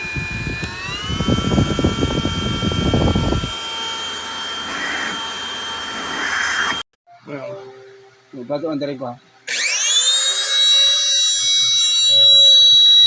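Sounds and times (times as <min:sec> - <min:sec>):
handheld vacuum motor whine: 0:00.0 - 0:06.8, 0:09.5 - 0:13.0.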